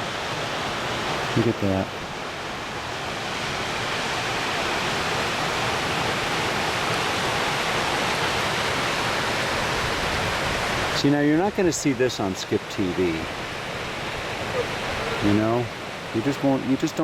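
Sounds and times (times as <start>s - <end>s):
water rushing: 0.0s - 17.0s.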